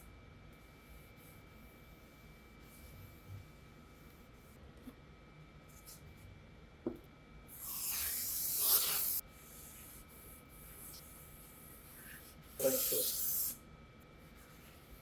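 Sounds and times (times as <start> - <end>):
spray can hissing: 7.6 - 9.2, 12.6 - 13.6.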